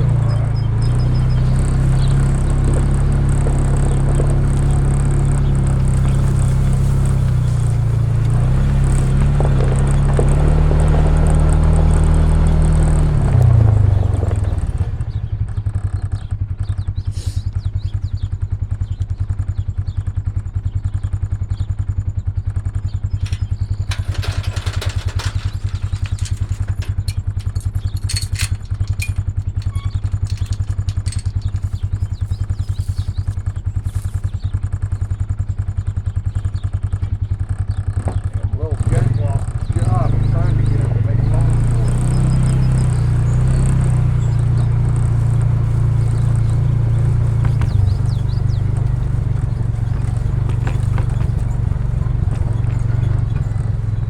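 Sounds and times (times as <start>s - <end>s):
farm vehicle engine idling: 0.0s - 54.0s
short clattering knocks: 23.2s - 33.3s, 44.2s - 54.0s.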